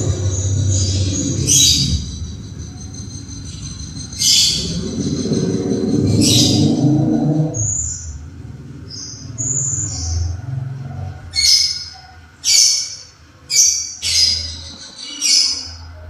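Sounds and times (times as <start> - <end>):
birds shrieking harshly: 0.0 - 8.2, 11.3 - 15.9
birds chirping: 0.0 - 16.0.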